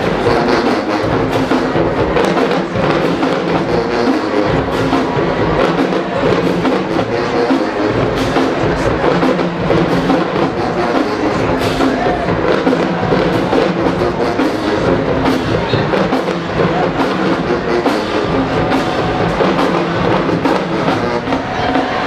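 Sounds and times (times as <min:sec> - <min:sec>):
drum and percussion strokes: 0:00.0 - 0:22.0
marching band playing: 0:00.0 - 0:22.0.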